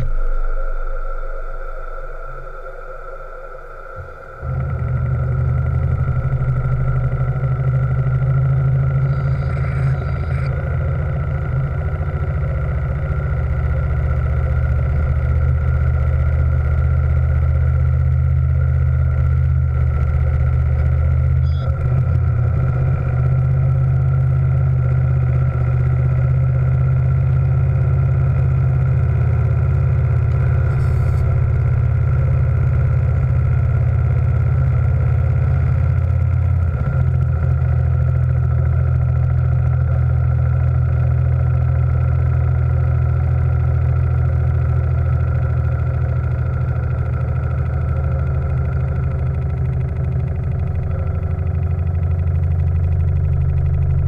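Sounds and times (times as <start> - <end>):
faint high tone: 0.0 - 11.1, 21.4 - 23.1
steam machinery low hum: 0.0 - 54.0.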